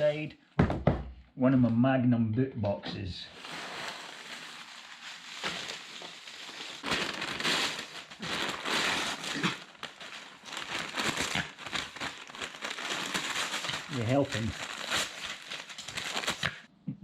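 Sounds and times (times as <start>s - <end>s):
newspaper rustling and crinkling: 3.3s - 16.7s.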